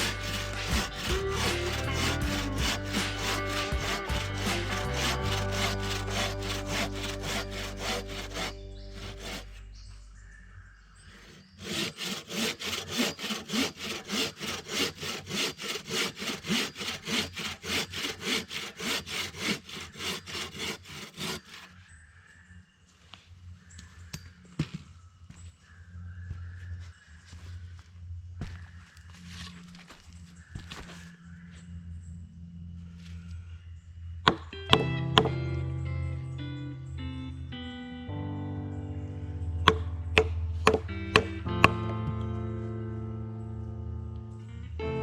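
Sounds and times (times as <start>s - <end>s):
hand saw cutting log: 0.0s - 9.6s, 11.2s - 21.7s, 39.7s - 41.8s
background music: 0.0s - 9.8s, 34.6s - 45.0s.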